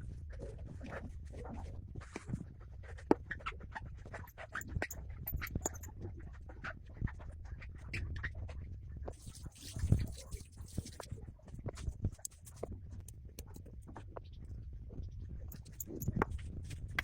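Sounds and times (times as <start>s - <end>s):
tools clicking on metal watch parts: 4.6s - 5.9s, 12.2s - 13.7s, 15.5s - 16.3s.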